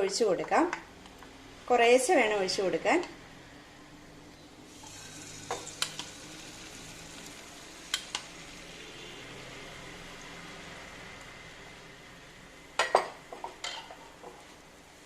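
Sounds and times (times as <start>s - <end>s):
egg sizzling in a pan: 4.6s - 14.7s.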